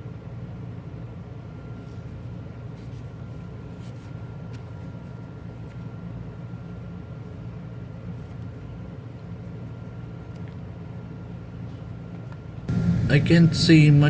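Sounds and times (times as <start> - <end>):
low rumble: 12.7 - 14.0.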